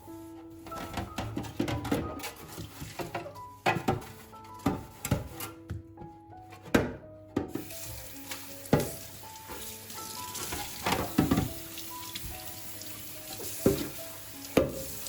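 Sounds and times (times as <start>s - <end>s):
soft background music: 0.0s - 15.0s
objects knocking on surfaces: 0.7s - 5.8s, 6.6s - 7.7s.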